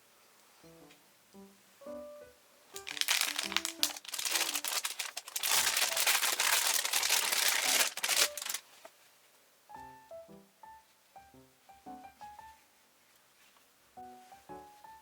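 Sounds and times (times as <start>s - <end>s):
soft piano and guitar music: 0.6s - 6.2s, 9.7s - 12.7s, 14.0s - 15.0s
material crinkling and rustling: 2.8s - 9.1s.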